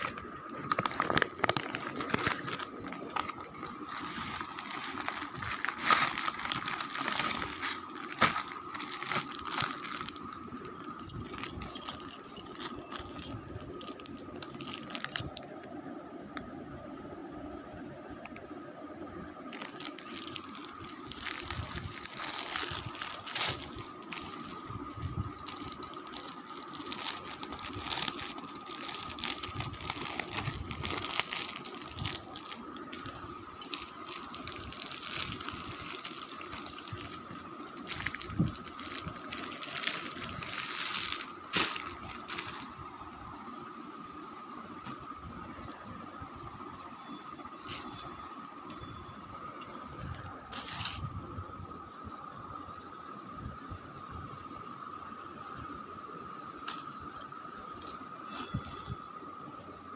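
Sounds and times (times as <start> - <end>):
plastic packaging crinkling: 0.0 - 15.6, 19.5 - 43.4, 47.3 - 51.1, 56.6 - 59.2
faint high whine: 0.0 - 59.9.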